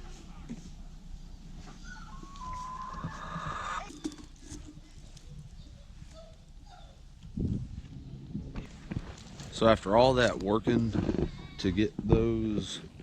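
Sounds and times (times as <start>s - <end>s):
farm animal call: 1.8s - 4.1s.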